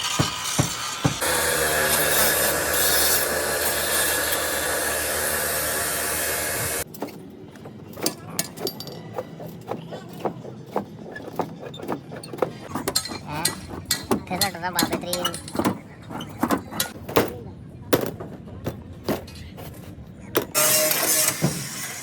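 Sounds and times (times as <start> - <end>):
tools clicking and knocking: 6.9 - 20.6.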